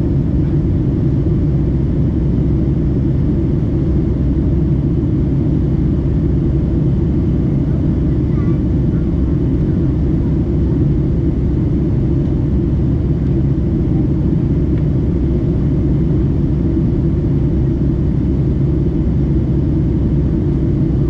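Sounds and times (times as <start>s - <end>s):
airliner engines rumbling: 0.0s - 21.0s.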